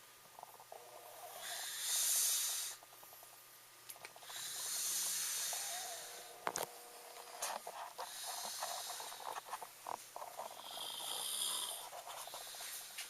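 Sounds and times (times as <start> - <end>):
person snoring: 0.4 - 2.8, 4.2 - 6.4, 8.0 - 9.5, 10.3 - 13.0.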